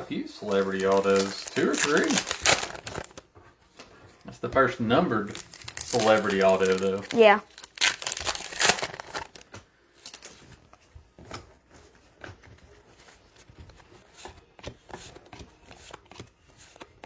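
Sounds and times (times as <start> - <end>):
trading cards clicking and sliding: 0.5 - 3.2.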